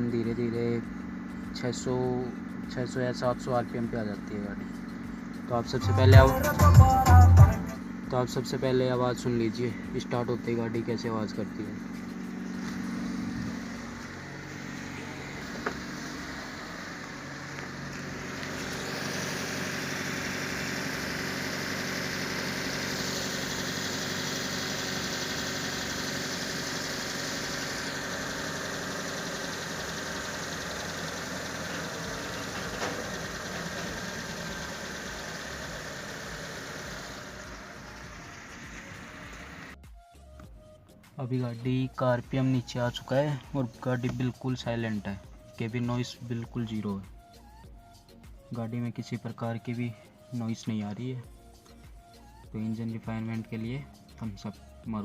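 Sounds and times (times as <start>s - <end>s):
car engine idling: 0.0s - 39.8s.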